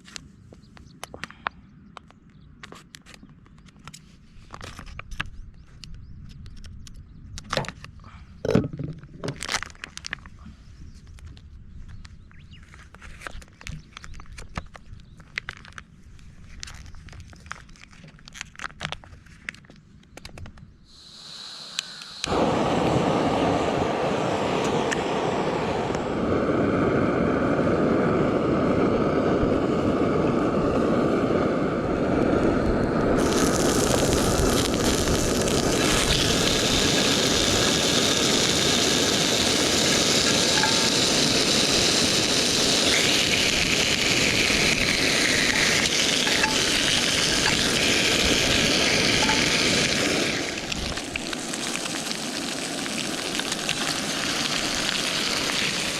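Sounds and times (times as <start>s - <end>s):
bright hiss: 20.9s - 27.8s, 32.6s - 55.9s
gas stove flame rushing: 20.9s - 55.9s.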